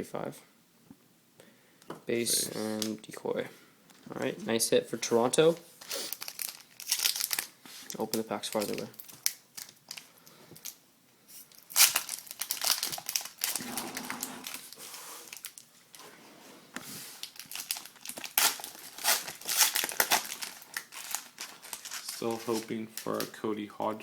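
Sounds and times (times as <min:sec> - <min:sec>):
plastic wrapper tearing and crinkling: 0:05.8 - 0:10.8, 0:11.4 - 0:15.7, 0:17.2 - 0:23.4.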